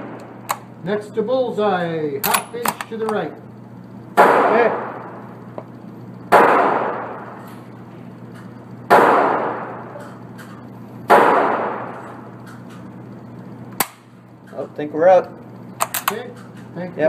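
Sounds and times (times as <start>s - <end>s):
rifle shots echoing indoors: 4.2s - 5.2s, 6.3s - 7.4s, 8.9s - 10.0s, 11.1s - 12.2s, 13.8s - 14.1s.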